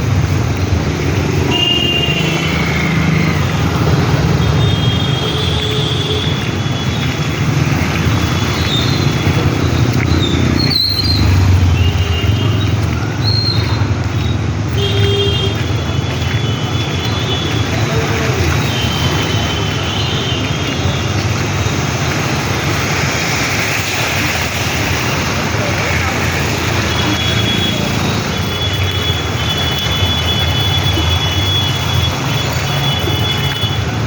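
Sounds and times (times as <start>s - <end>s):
vehicle engines running: 0.0s - 34.0s
car horn toots: 1.5s - 2.6s, 14.7s - 15.6s.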